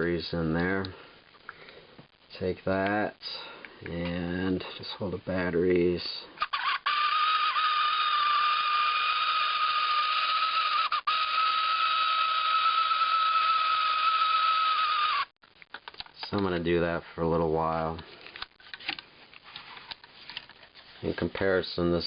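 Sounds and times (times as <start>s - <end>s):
toy motor whirring buzz: 6.4s - 15.3s.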